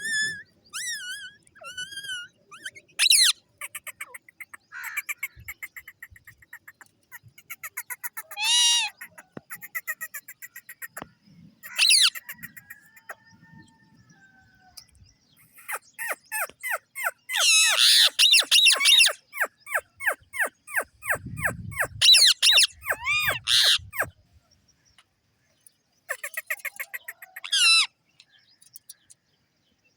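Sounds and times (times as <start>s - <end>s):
parrots screeching: 0.0s - 3.4s, 8.2s - 9.0s, 11.6s - 12.2s, 15.6s - 24.1s, 27.3s - 27.9s
parrots chirping: 0.0s - 11.0s, 11.6s - 12.6s, 15.4s - 24.1s.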